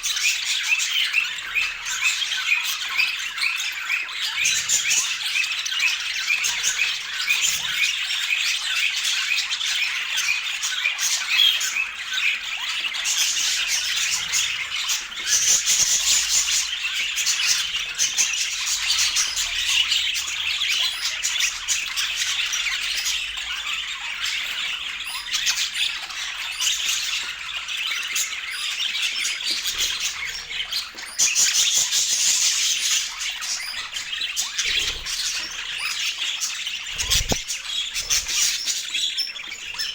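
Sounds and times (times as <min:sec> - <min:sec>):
budgerigars chattering and squawking: 0:00.0 - 0:39.9.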